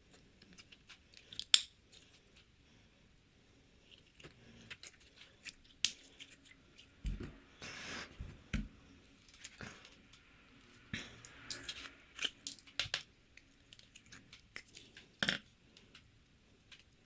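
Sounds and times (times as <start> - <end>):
soft thumps: 7.0 - 7.4.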